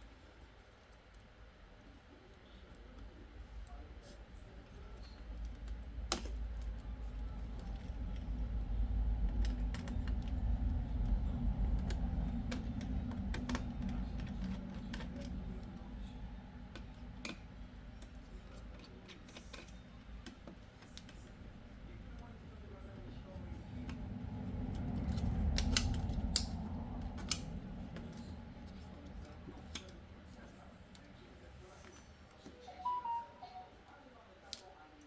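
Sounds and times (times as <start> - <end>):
low rumble: 5.2 - 17.9.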